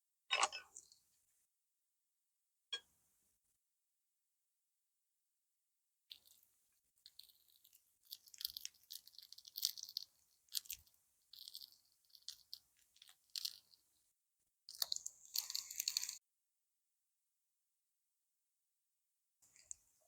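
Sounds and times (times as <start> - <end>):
bread frying in hot oil: 6.1 - 14.1, 14.7 - 16.2.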